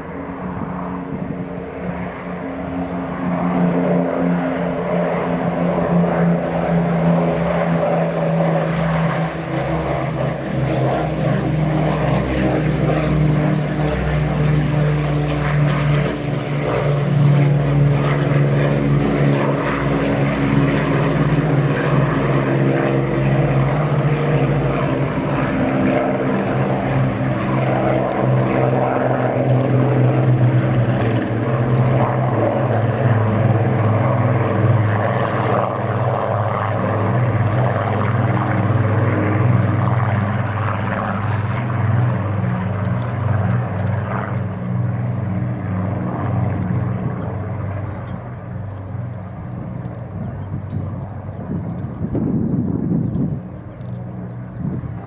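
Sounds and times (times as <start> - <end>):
propeller plane engines droning: 0.0 - 55.0.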